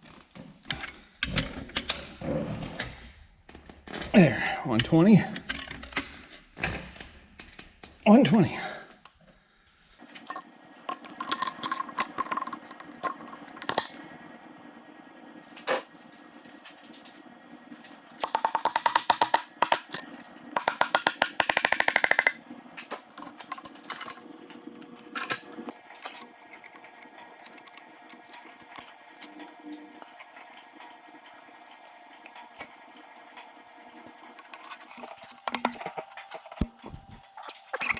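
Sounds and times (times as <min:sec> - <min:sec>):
tools clinking on metal: 0:10.2 - 0:14.1, 0:18.2 - 0:22.4, 0:23.1 - 0:29.4
ratchet wrench clicking: 0:18.2 - 0:20.0, 0:20.6 - 0:22.4, 0:26.0 - 0:28.9.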